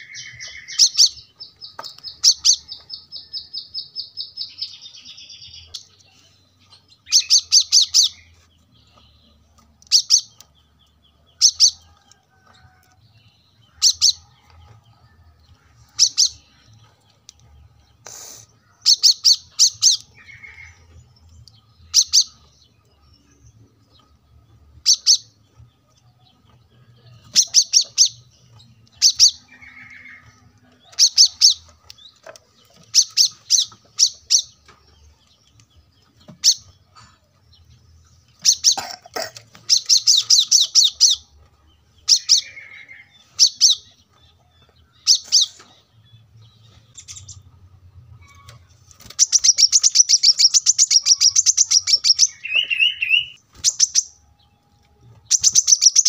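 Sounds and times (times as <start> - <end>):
bird chirping and trilling: 0.0 - 6.0, 6.8 - 11.9, 13.6 - 14.3, 15.9 - 16.9, 18.0 - 21.2, 24.8 - 25.7, 26.3 - 36.8, 38.3 - 47.6, 48.2 - 56.0.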